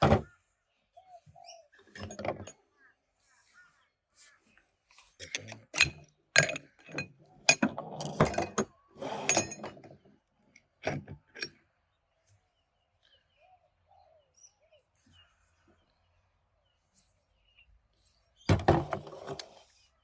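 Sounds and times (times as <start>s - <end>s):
faint bird chirps: 0.2s - 5.2s, 12.1s - 18.5s
metal parts clinking and knocking: 2.0s - 2.5s, 5.2s - 9.9s
metal scraping: 5.3s - 9.8s.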